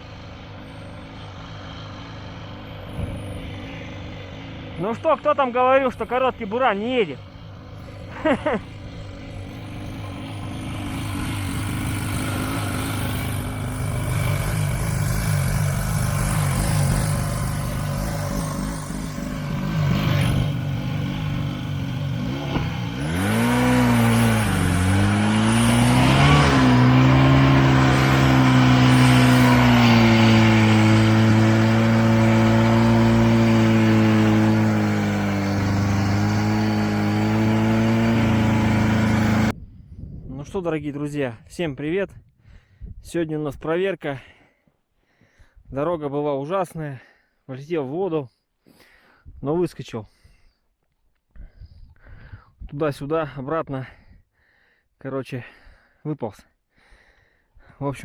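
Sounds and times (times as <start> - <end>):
snowmobile engine revving: 0.0 - 39.5.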